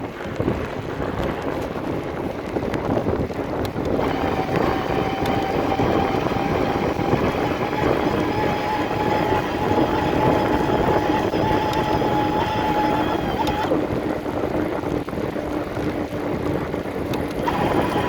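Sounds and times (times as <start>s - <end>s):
wind noise: 0.0s - 18.0s
e-bike motor whining: 3.3s - 18.0s
clicks: 3.6s - 13.7s, 17.1s - 18.0s.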